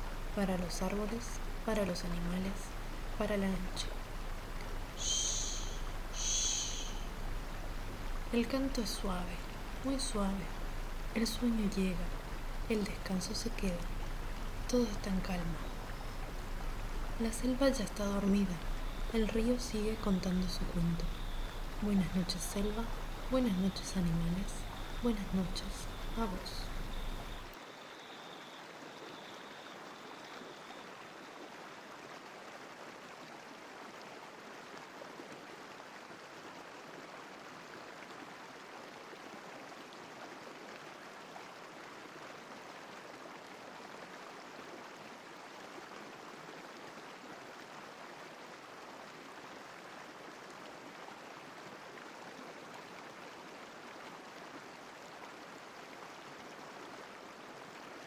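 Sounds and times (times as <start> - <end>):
stream water rushing: 0.0 - 27.8.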